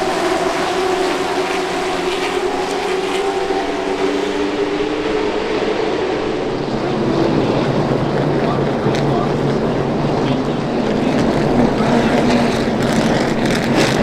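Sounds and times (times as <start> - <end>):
race car engines droning: 0.0 - 14.0.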